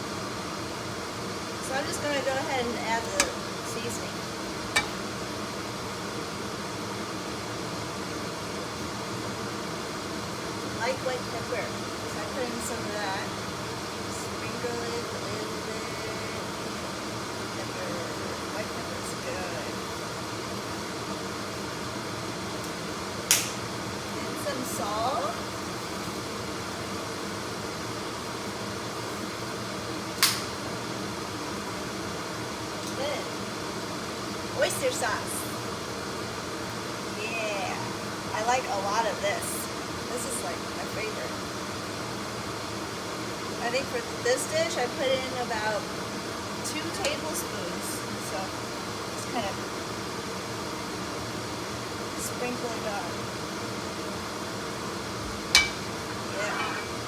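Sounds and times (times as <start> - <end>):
leaves stir-frying in a wok: 0.0 - 57.0.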